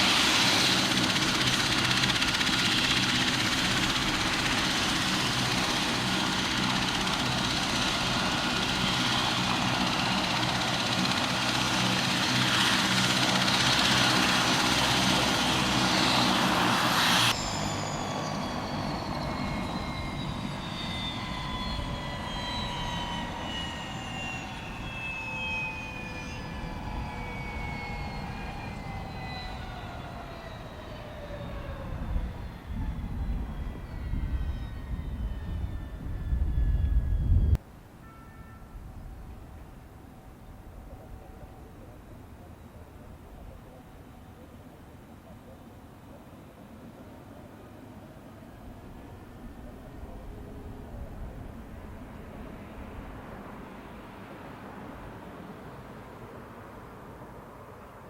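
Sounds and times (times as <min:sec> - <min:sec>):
helicopter turbine and rotor noise: 0:00.0 - 0:37.6, 0:39.3 - 0:58.0
turbine whine falling in pitch: 0:00.8 - 0:37.6.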